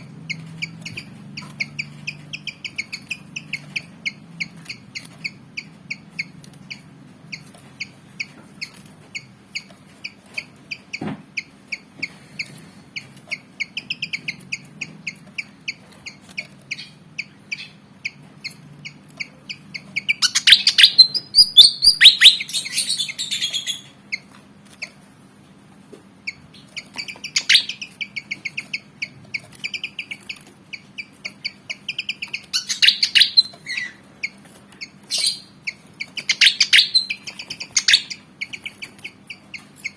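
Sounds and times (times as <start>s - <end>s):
bird chipping calls: 0.0s - 25.0s, 26.2s - 39.9s
harsh bird song bursts: 10.0s - 24.2s, 26.3s - 39.9s.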